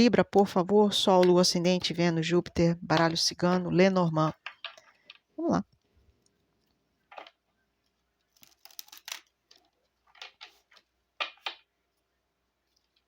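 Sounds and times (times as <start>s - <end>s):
cards being shuffled: 8.3s - 11.6s.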